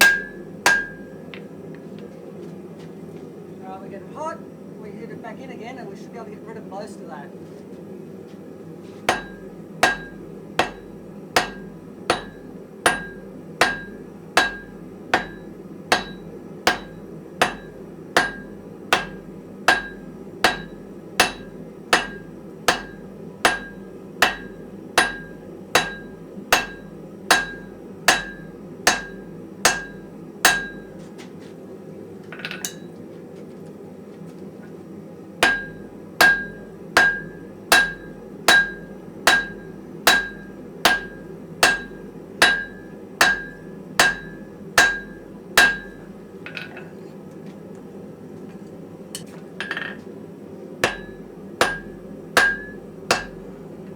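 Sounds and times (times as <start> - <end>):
hammer striking iron on anvil: 0.0 - 1.2, 9.1 - 31.0, 32.4 - 33.0, 35.4 - 46.8, 49.2 - 50.0, 50.8 - 53.5.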